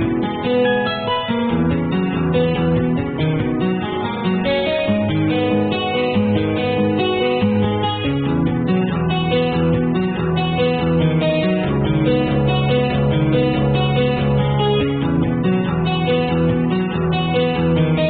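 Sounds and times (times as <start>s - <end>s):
plucked and strummed guitar: 0.0s - 18.0s.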